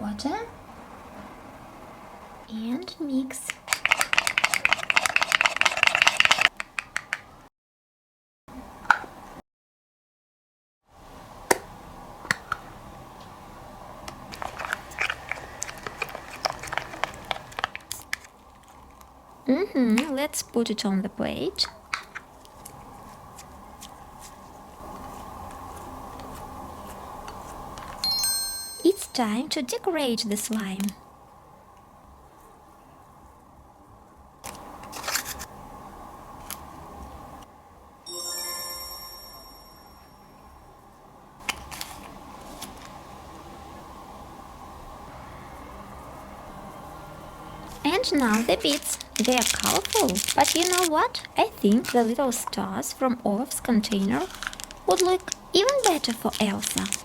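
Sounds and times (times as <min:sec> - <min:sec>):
bright chime sound effect: 0:28.0 - 0:29.2, 0:38.1 - 0:40.4
slime squelching and clicking: 0:48.0 - 0:52.2, 0:53.8 - 0:57.0.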